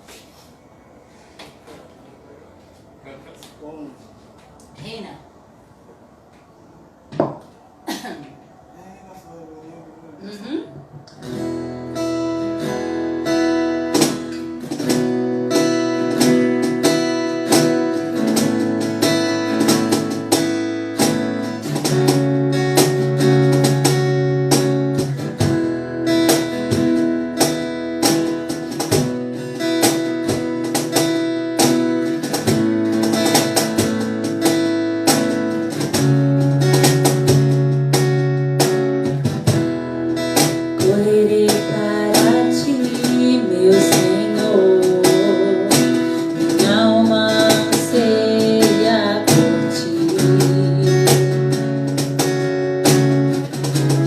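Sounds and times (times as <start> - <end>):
acoustic guitar strumming: 11.0 - 54.0.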